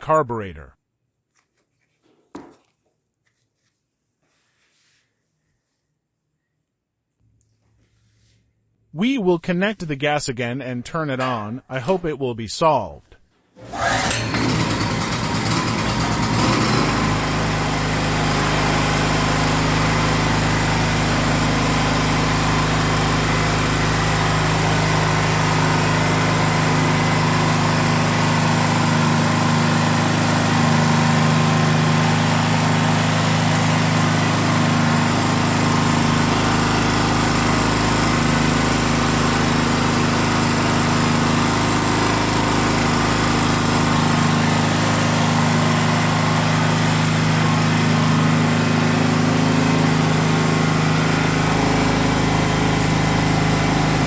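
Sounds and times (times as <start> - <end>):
small generator engine running: 13.6 - 54.0.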